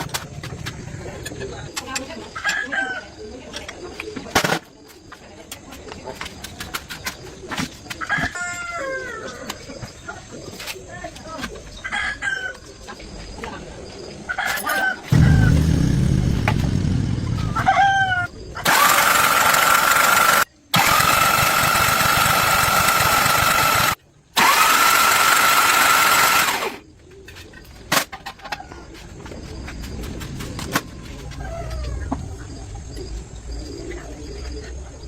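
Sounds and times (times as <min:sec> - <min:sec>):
low rumble: 0:15.1 - 0:18.3
rooster crowing: 0:17.4 - 0:18.3.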